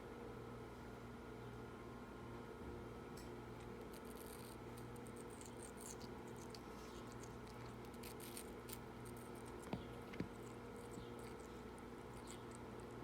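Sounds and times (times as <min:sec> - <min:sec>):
parrot chewing fruit: 0:03.6 - 0:13.0.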